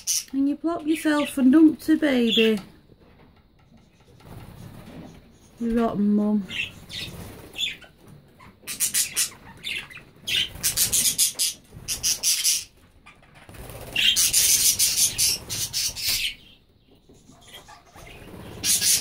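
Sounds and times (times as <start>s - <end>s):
budgerigars chattering and squawking: 0.0s - 0.3s, 6.4s - 19.0s.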